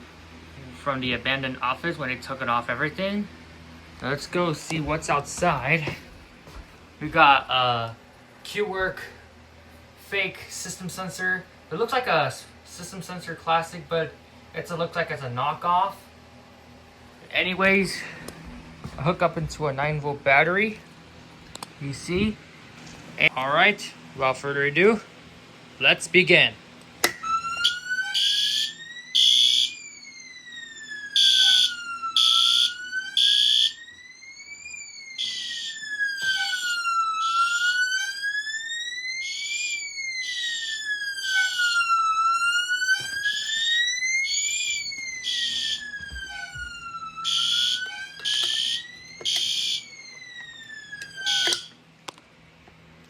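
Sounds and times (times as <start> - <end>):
alarm siren sweeping up and down: 4.2 - 6.1, 27.0 - 51.8
fire alarm horn blasts: 27.0 - 51.8.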